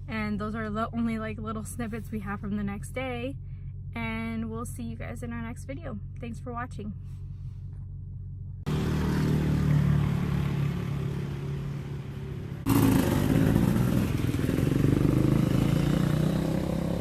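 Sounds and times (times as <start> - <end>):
dirt bike engine running: 7.9 - 17.0.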